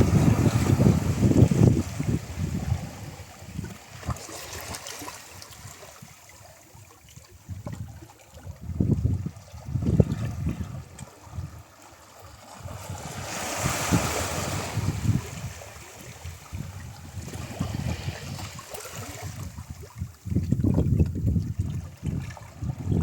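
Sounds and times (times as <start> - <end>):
ocean waves breaking: 0.0 - 6.6, 10.8 - 19.8
wind rumble on microphone: 0.0 - 23.0.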